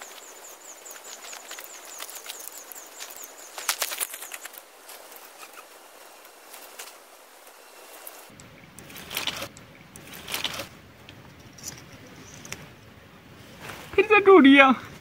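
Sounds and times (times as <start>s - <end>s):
sharp crackles and snaps: 0.0s - 11.8s.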